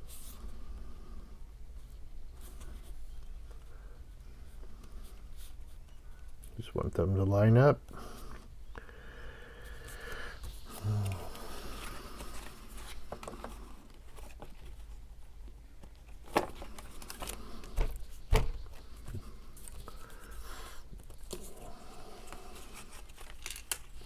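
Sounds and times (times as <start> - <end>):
cardstock rustling and rubbing: 9.7 - 24.0.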